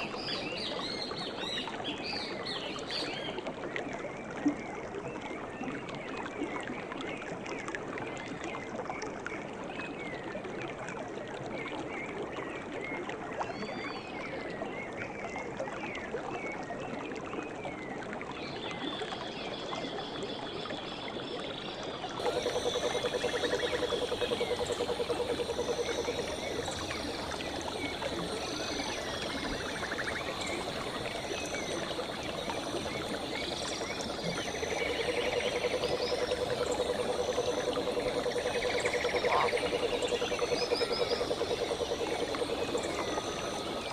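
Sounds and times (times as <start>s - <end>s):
river water flowing: 22.1s - 43.9s.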